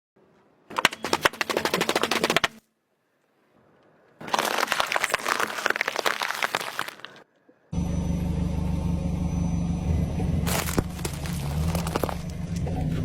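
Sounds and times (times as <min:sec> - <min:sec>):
potatoes crackling and crunching: 0:04.2 - 0:07.2, 0:10.5 - 0:12.6.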